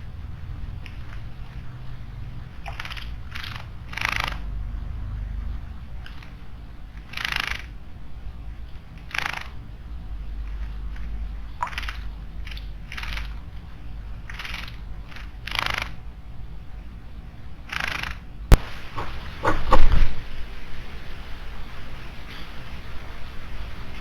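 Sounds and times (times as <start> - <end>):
bird splashing and fluttering: 17.8 - 24.0.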